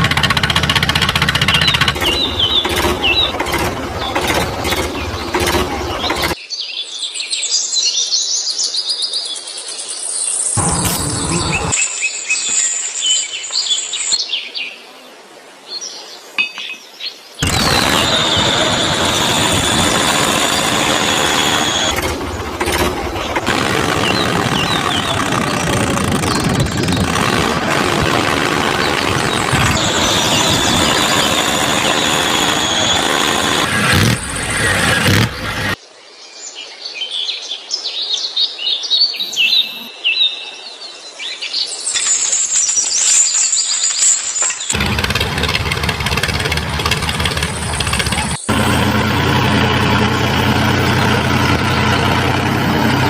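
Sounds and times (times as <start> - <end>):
small motor whining: 0.0 - 6.4, 10.6 - 11.8, 17.4 - 35.8
small birds chirping: 1.3 - 6.4, 10.6 - 13.6, 16.4 - 27.6, 28.2 - 35.8, 39.1 - 40.2.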